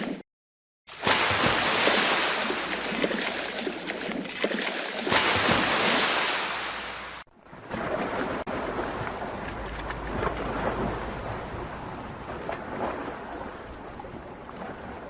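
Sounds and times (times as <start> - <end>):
river water rushing: 8.0 - 13.9.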